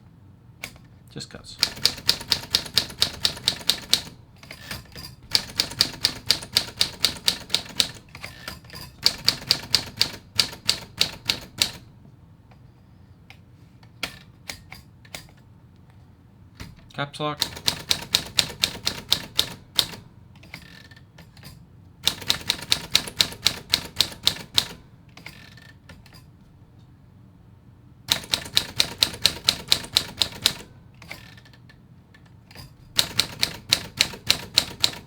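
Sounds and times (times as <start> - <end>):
typewriter keystrokes: 1.6 - 11.9, 16.6 - 26.3, 28.1 - 31.8, 32.5 - 35.0.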